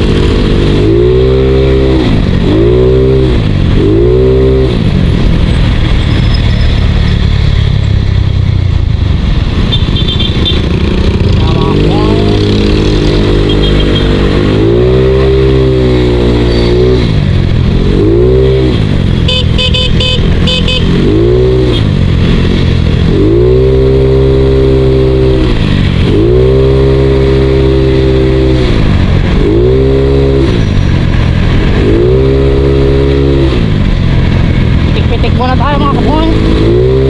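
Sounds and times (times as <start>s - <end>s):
scooter engine revving: 0.0s - 6.0s, 9.6s - 37.0s
horn beeping: 13.4s - 14.2s, 19.2s - 21.1s.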